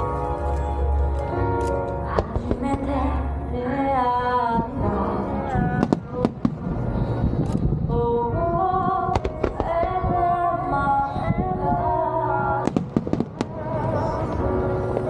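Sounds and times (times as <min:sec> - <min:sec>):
melodic ballad playing: 0:00.0 - 0:15.0
fireworks cracking: 0:12.7 - 0:13.9.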